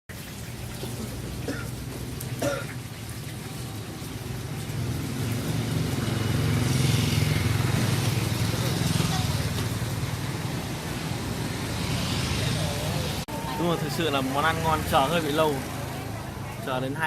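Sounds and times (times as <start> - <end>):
road noise: 0.1 - 17.0
faint voices: 11.8 - 17.0.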